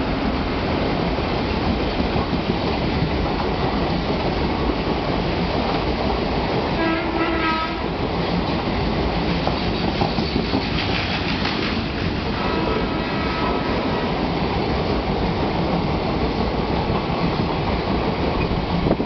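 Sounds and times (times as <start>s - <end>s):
train rumbling and clattering on track: 0.0s - 19.0s.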